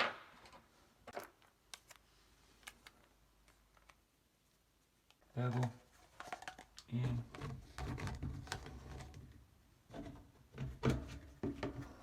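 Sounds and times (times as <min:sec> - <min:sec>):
plastic parts clicking and knocking: 0:05.1 - 0:12.0.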